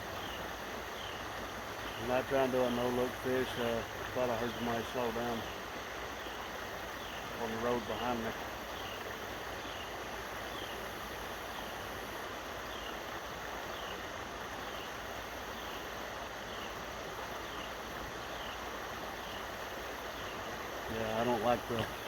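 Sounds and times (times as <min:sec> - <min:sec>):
river water rushing: 0:00.0 - 0:22.0.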